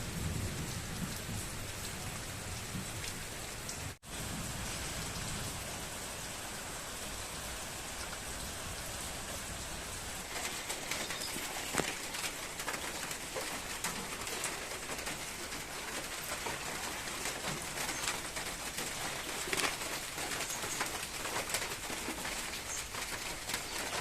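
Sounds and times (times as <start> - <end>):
rain patter: 0.0 - 24.0
water drips: 7.2 - 24.0.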